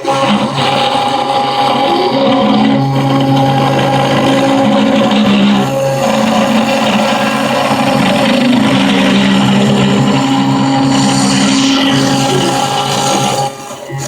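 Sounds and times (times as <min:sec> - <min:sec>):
stepper motors whining: 0:00.0 - 0:14.0.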